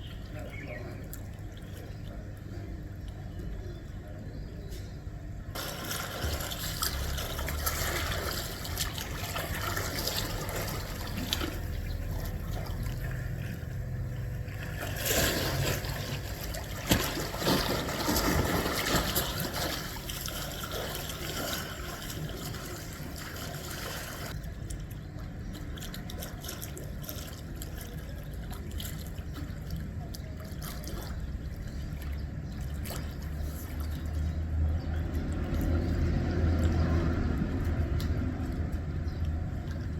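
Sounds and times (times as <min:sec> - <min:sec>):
low steady rumble: 0:00.0 - 0:39.9
water trickling: 0:05.6 - 0:24.6.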